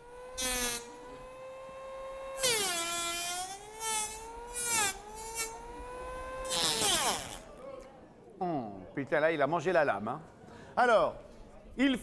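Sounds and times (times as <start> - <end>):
buzzing whine of sweeper motor: 0.0 - 7.5
harsh rasping bursts: 0.0 - 7.6.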